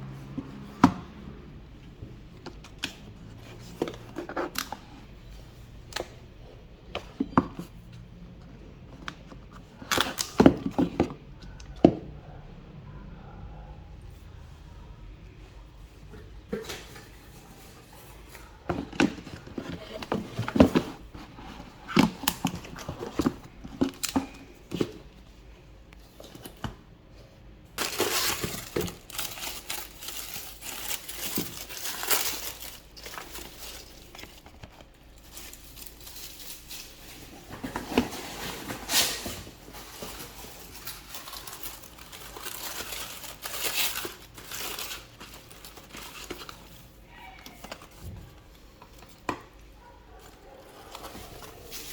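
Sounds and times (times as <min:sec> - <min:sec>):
plastic wrapping crinkling: 0:27.7 - 0:51.9.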